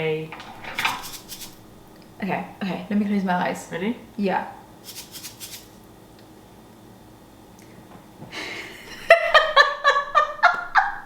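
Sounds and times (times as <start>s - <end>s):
soft rustling hiss: 0.3s - 6.8s
woman giggling: 8.4s - 11.0s.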